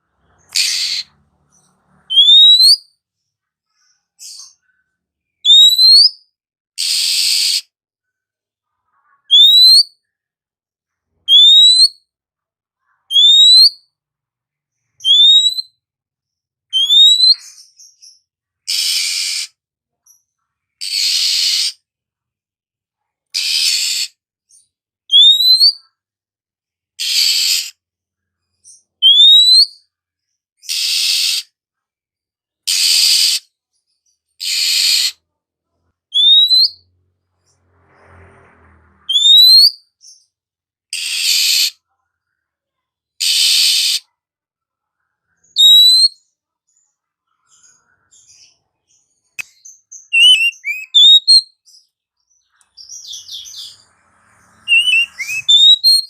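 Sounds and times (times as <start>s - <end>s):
bird twittering chirps: 0.2s - 2.8s, 4.2s - 6.2s, 15.0s - 15.7s, 16.7s - 20.2s, 36.1s - 36.8s, 39.1s - 40.3s, 47.6s - 56.0s
songbird whistling and rasping: 0.4s - 2.9s, 5.4s - 7.7s, 9.3s - 9.9s, 11.3s - 12.0s, 13.1s - 13.8s, 15.0s - 15.7s, 16.7s - 19.6s, 20.8s - 21.8s, 23.4s - 24.2s, 25.1s - 25.8s, 27.0s - 27.8s, 28.6s - 29.8s, 30.6s - 31.6s, 32.7s - 33.5s, 34.4s - 35.2s, 36.1s - 36.8s, 39.1s - 40.3s, 40.9s - 41.8s, 43.2s - 44.1s, 45.5s - 46.3s, 49.1s - 51.8s, 52.5s - 56.0s.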